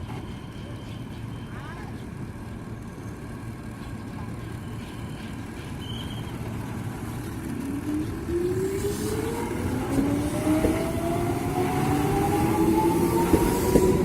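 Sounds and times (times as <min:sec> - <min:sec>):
train low rumble: 0:00.0 - 0:14.0
traction motor whine: 0:06.2 - 0:14.0.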